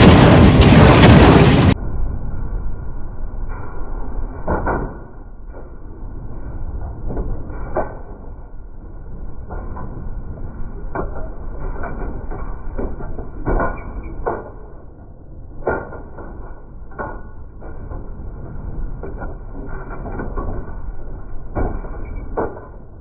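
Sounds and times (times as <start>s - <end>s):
knocks and clanks: 0.0s - 1.8s, 19.0s - 23.0s
machine rumbling: 0.0s - 23.0s.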